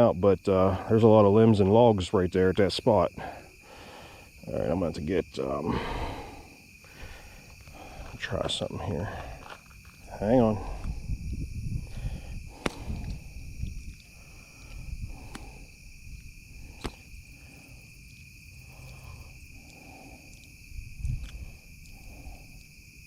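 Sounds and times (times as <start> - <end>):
insects droning: 0.0 - 23.0
microphone handling bumps: 10.6 - 17.2.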